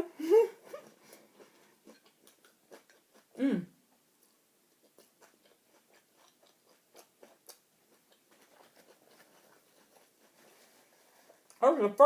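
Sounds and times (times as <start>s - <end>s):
chewing salad: 0.6s - 12.0s.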